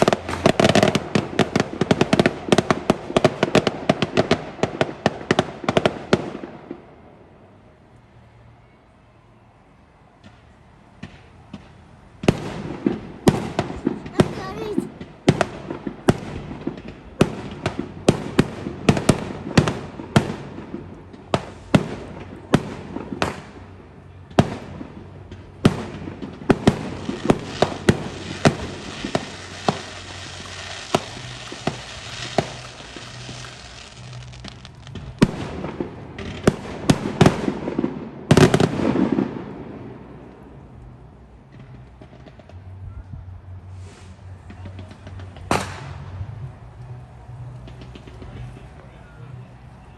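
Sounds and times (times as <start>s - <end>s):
fireworks bangs: 0.0s - 6.8s, 10.2s - 40.2s
fireworks crackle and hiss: 0.0s - 6.8s, 10.2s - 39.8s, 43.6s - 46.2s.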